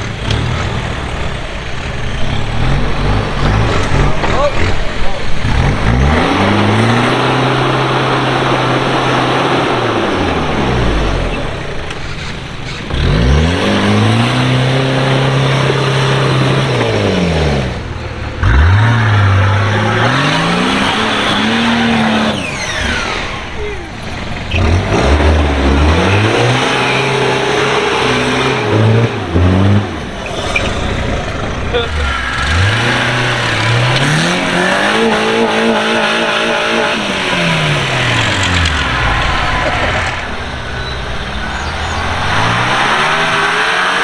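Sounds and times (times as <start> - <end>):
engine revving hard: 0.0 - 44.0
loud rushing noise: 30.4 - 44.0.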